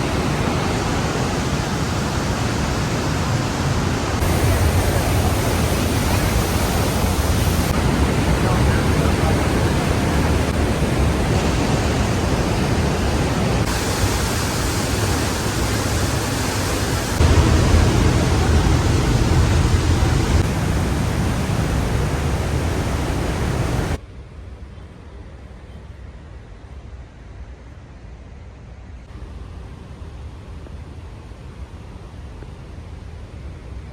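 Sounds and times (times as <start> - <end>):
waterfall roaring: 0.0 - 24.0.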